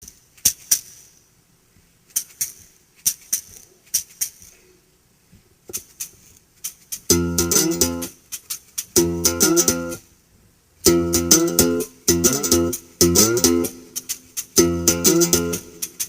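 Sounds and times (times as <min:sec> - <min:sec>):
plucked string chord: 0:07.1 - 0:08.1, 0:09.0 - 0:10.0, 0:10.9 - 0:14.0, 0:14.6 - 0:16.0.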